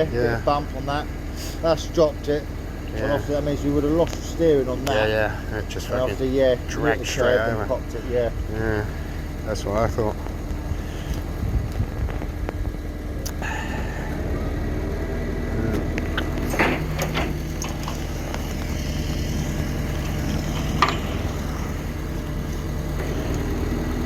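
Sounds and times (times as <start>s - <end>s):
vehicle engine idling: 0.0s - 24.0s
sharp metallic knocks and clanks: 16.1s - 24.0s.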